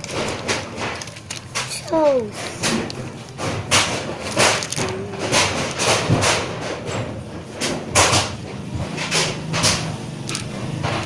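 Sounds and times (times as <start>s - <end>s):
hands handling sticker packaging: 0.0s - 6.7s.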